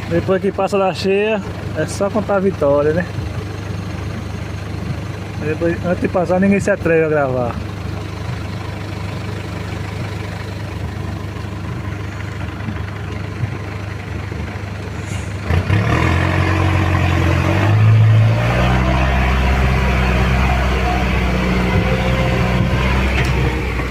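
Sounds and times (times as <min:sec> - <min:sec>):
vehicle engine revving: 0:07.5 - 0:23.9.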